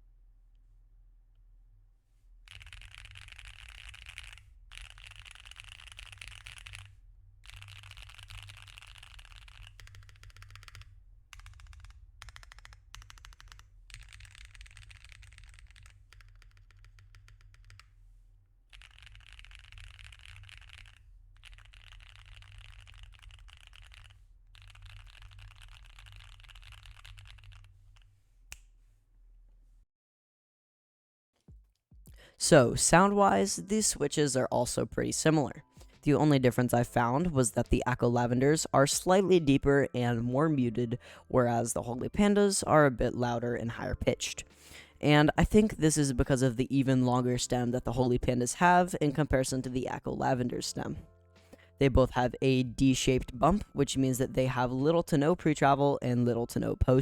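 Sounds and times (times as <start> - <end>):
mechanical keyboard typing: 2.5 - 17.9, 18.7 - 28.1.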